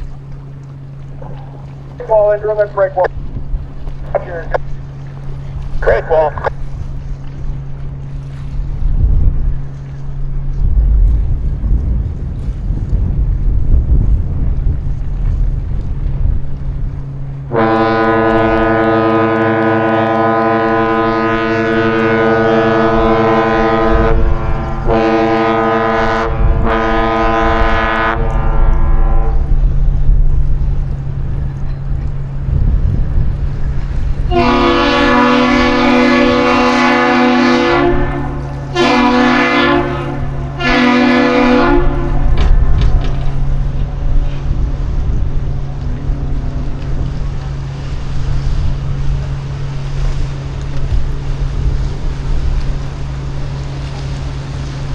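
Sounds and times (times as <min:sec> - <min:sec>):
low hum: 0:00.0 - 0:54.9
ship horn blasts: 0:00.0 - 0:54.9
wind rumble: 0:00.0 - 0:54.9
bridge horn blasts: 0:17.0 - 0:29.9, 0:30.8 - 0:54.9.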